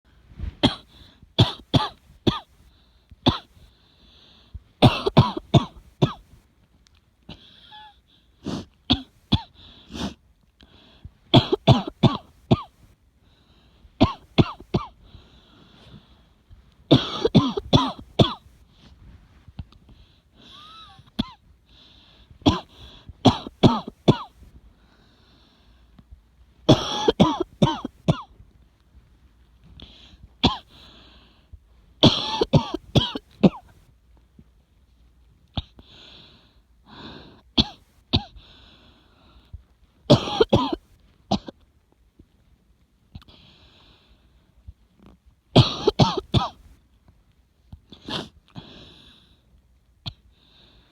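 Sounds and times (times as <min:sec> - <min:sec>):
person coughing: 0:00.6 - 0:02.5, 0:04.8 - 0:06.2, 0:11.4 - 0:12.7, 0:14.0 - 0:15.0, 0:16.9 - 0:18.4, 0:22.5 - 0:24.3, 0:26.7 - 0:28.3, 0:32.0 - 0:33.7, 0:37.6 - 0:38.3, 0:40.1 - 0:41.5, 0:45.6 - 0:46.6.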